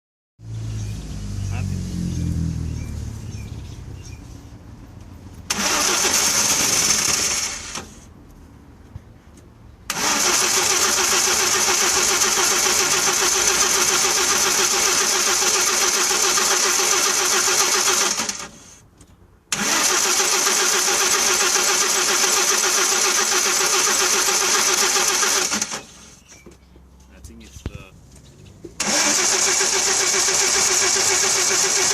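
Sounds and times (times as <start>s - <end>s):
starter motor cranking engine: 5.5s - 8.0s, 9.9s - 18.8s, 19.5s - 26.4s, 28.7s - 31.9s.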